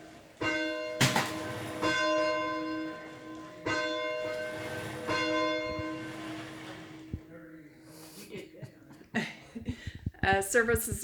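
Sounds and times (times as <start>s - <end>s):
church bell ringing: 0.0s - 7.3s
loud clatter: 1.0s - 2.6s.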